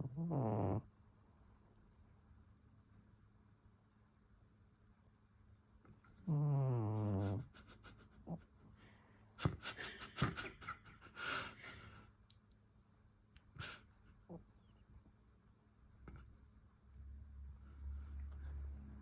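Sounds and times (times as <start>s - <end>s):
cat snoring: 0.0s - 0.8s, 6.2s - 7.5s
wheezy breaths and snuffles: 0.0s - 0.8s, 6.2s - 10.4s.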